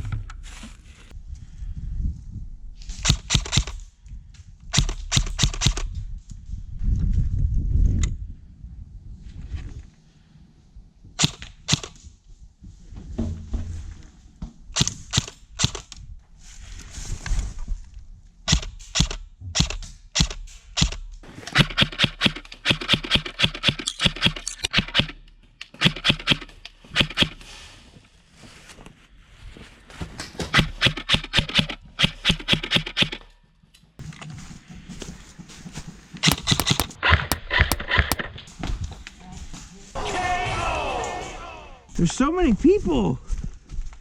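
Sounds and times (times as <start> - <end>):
airsoft gun firing: 3.0 - 3.8, 4.7 - 5.9, 11.2 - 12.0, 18.5 - 25.2, 36.2 - 38.3.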